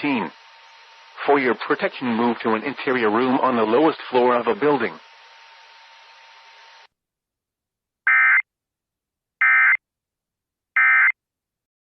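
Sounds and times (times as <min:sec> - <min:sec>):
warbling digital data tone bursts: 0:08.1 - 0:08.4.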